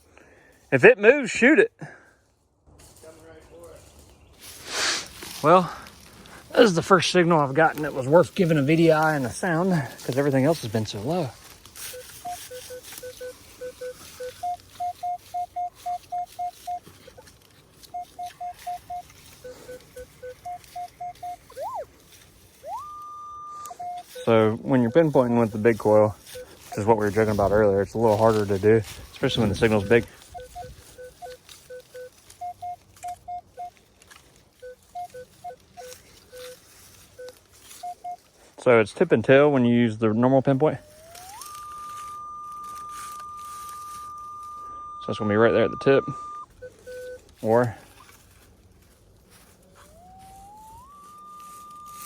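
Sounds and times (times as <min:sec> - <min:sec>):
metal detector beeps: 0:06.5 - 0:22.0, 0:22.6 - 0:33.8, 0:34.6 - 0:38.3, 0:40.7 - 0:48.2, 0:49.7 - 0:52.0.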